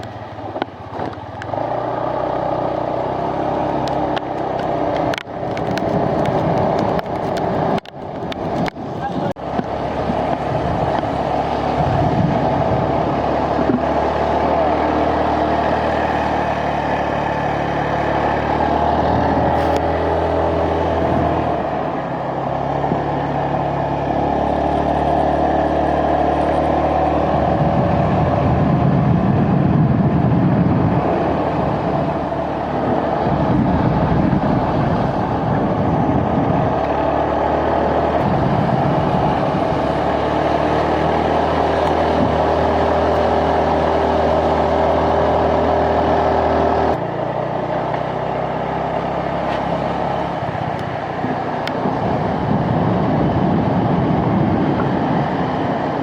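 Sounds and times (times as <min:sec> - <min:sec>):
vehicle engine driving: 0:00.0 - 0:56.0.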